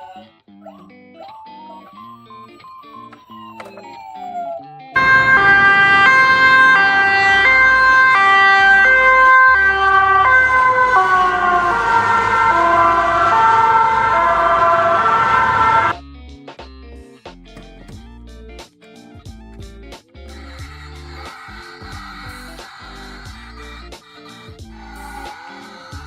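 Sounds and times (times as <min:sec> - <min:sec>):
two-tone ambulance siren: 0:01.3 - 0:16.0.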